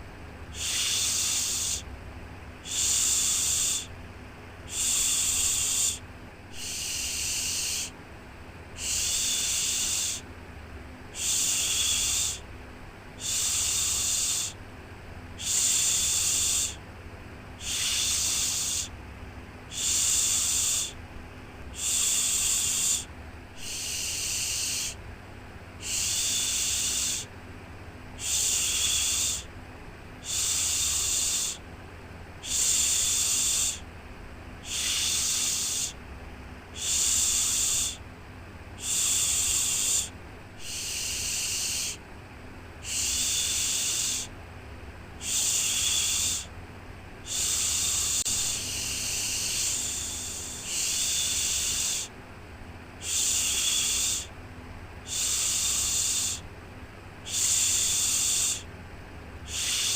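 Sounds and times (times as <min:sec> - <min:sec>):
person shushing: 0:00.6 - 0:01.9, 0:04.7 - 0:07.9, 0:21.7 - 0:25.0, 0:25.8 - 0:27.3, 0:30.2 - 0:31.6, 0:32.4 - 0:33.8, 0:38.8 - 0:42.0, 0:42.8 - 0:44.4, 0:45.2 - 0:46.6, 0:47.3 - 0:52.1, 0:53.0 - 0:54.3, 0:59.5 - 0:59.9.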